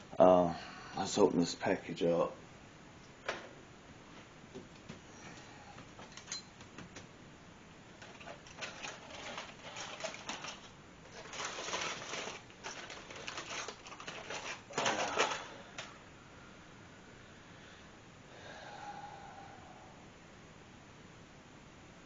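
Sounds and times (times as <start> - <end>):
wrapping tearing: 8.0 - 15.8
wrapping crinkling and rustling: 8.0 - 15.9.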